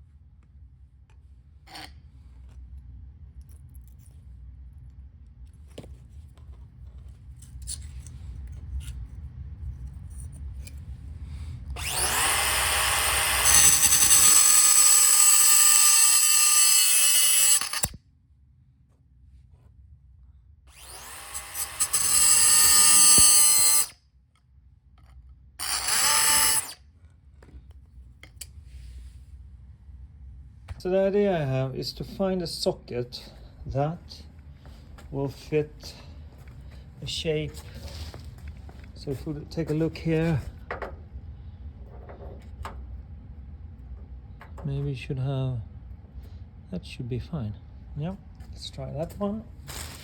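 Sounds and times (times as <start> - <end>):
power tool on sheet metal: 11.8 - 18.0, 20.7 - 23.9, 25.6 - 26.8.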